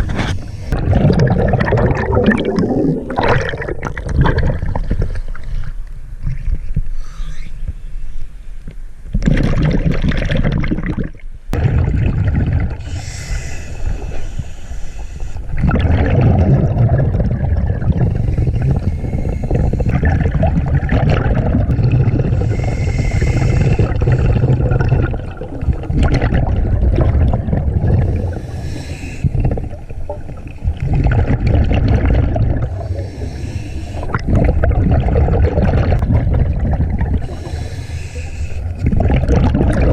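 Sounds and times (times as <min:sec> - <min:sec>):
diver breathing through regulator: 0:00.0 - 0:00.8, 0:12.8 - 0:15.6, 0:18.0 - 0:20.0, 0:21.7 - 0:24.9, 0:27.9 - 0:29.7, 0:32.6 - 0:34.4, 0:37.2 - 0:38.9
exhaled bubbles bursting: 0:00.0 - 0:05.4, 0:09.1 - 0:13.0, 0:15.5 - 0:28.4, 0:29.3 - 0:37.6, 0:38.7 - 0:39.9.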